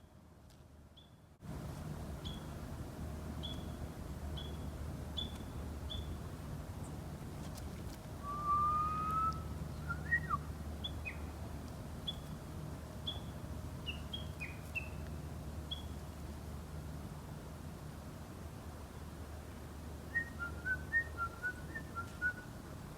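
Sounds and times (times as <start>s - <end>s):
steady low hum: 0.0s - 22.9s
small bird chirping: 2.2s - 2.5s, 3.4s - 4.6s, 5.2s - 6.2s, 12.0s - 12.4s, 13.0s - 15.1s, 15.7s - 16.0s
person whistling: 8.2s - 10.4s.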